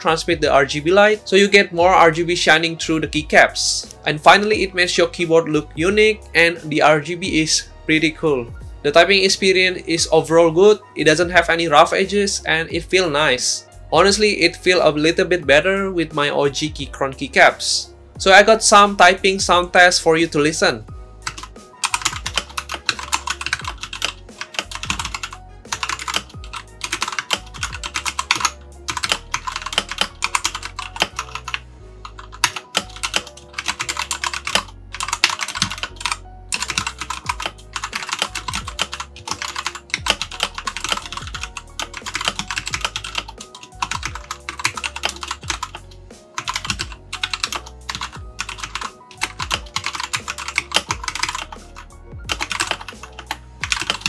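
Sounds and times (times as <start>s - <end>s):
mechanical keyboard typing: 21.2s - 54.0s.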